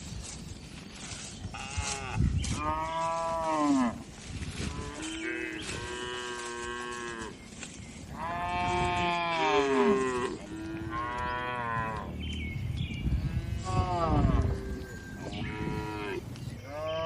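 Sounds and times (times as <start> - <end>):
cattle mooing: 8.2 - 12.1, 13.3 - 17.0.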